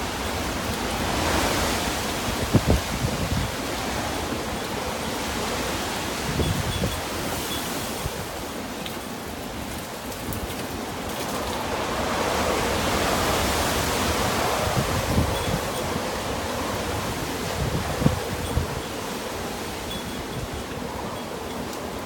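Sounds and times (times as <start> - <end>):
strong wind rushing: 0.0 - 5.4, 6.1 - 7.4, 12.0 - 21.3
wind buffeting microphone: 0.0 - 8.7, 9.4 - 22.0.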